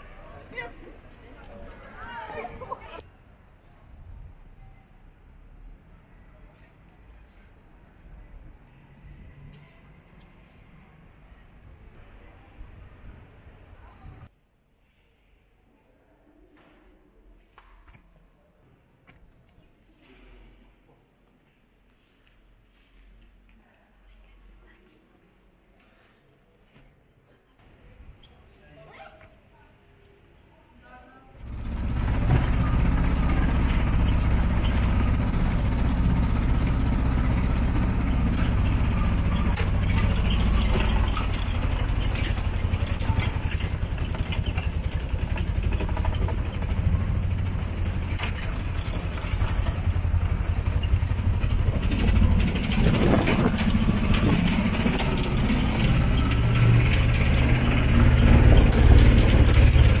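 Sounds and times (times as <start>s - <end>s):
road noise: 31.4s - 60.0s
small engine running: 31.4s - 60.0s.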